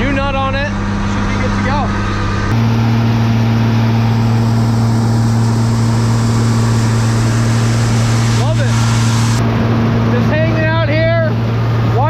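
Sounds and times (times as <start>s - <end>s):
harvester engine humming: 2.5s - 9.7s.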